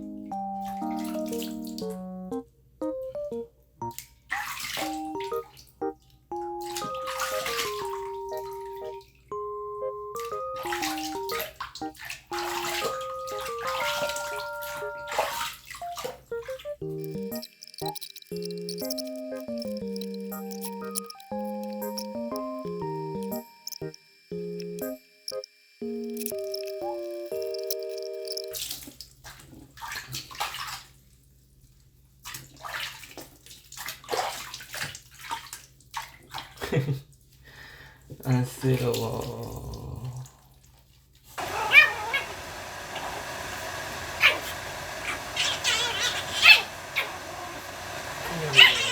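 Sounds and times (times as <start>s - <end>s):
light background music: 0.0s - 4.0s, 4.8s - 28.6s
water running and splashing: 6.6s - 9.0s, 10.2s - 23.9s, 26.3s - 31.0s, 32.2s - 36.8s, 38.6s - 48.9s.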